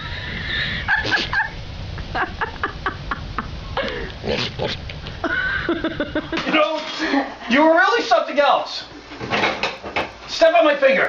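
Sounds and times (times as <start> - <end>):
animal calling: 0.6 - 1.5, 4.2 - 4.9.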